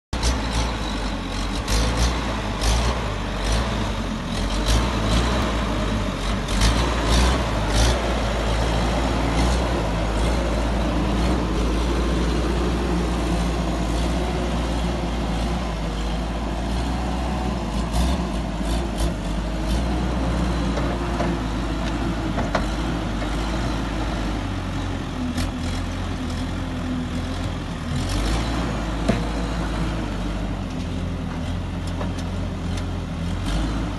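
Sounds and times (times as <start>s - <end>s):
loader engine running: 0.1s - 33.9s
sharp knocks and clanks: 22.3s - 23.3s.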